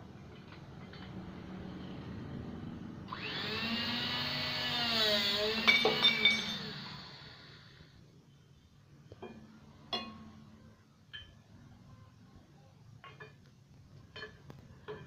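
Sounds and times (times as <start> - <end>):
angle cutter motor whine: 3.1 - 8.0.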